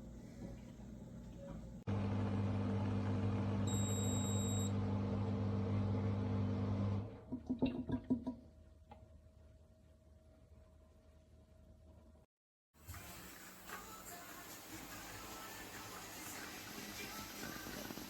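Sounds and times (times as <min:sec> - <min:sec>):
espresso machine pump humming: 0:01.9 - 0:07.0.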